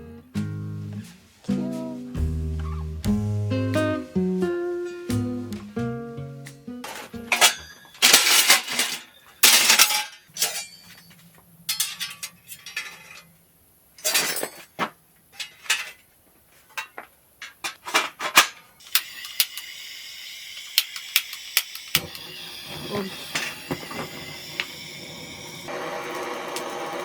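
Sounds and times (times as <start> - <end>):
cookware and dishes clinking: 6.9 - 11.1
steady hiss: 18.8 - 25.7.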